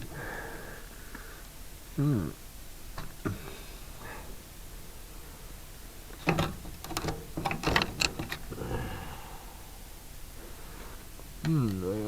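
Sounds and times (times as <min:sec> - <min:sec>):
knocks and rattles of engine parts: 0:05.9 - 0:08.6.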